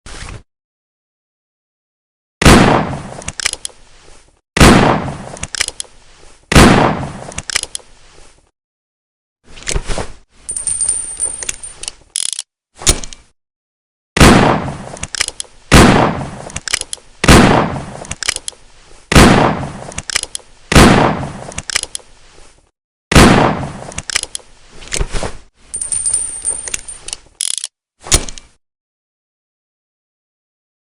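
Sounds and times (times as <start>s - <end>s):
revolver gunshots echoing: 2.4s - 3.1s, 4.6s - 5.2s, 6.5s - 7.2s, 14.2s - 14.8s, 15.7s - 16.4s, 17.2s - 18.0s, 19.1s - 19.8s, 20.7s - 21.4s, 23.1s - 23.8s.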